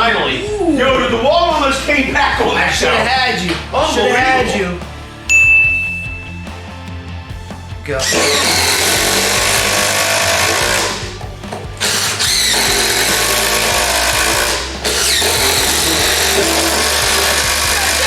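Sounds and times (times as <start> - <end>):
impact drivers hammering: 8.0 - 18.0.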